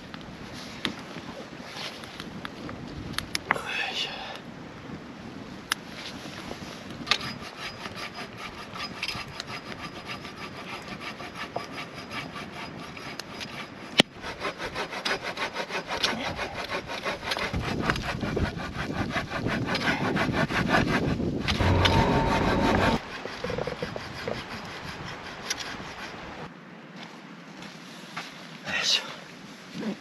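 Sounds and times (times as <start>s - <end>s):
hand saw cutting wood: 7.2s - 26.2s.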